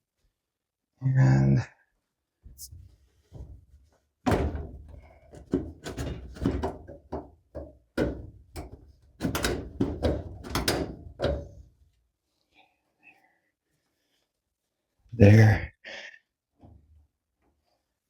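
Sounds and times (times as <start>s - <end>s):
sheet-metal clunks and knocks: 2.8s - 11.8s.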